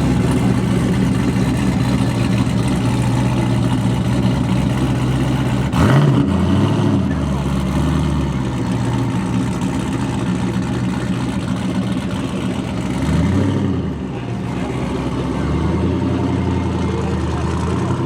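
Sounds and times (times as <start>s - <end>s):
car engine running: 0.0s - 18.0s.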